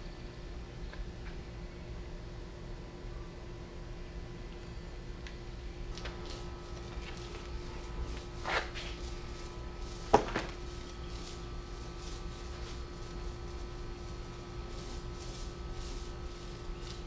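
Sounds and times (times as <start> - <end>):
steady low hum: 0.0 - 17.0
handling knocks and rustles: 5.9 - 17.0.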